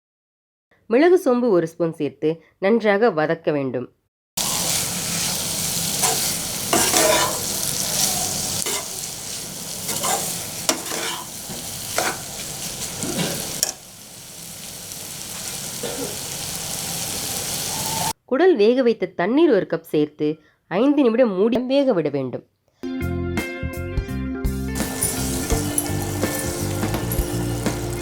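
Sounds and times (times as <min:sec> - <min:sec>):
spatula scraping a pan: 0:04.4 - 0:17.1, 0:24.8 - 0:28.0
meat sizzling in oil: 0:04.4 - 0:18.2, 0:24.8 - 0:28.0.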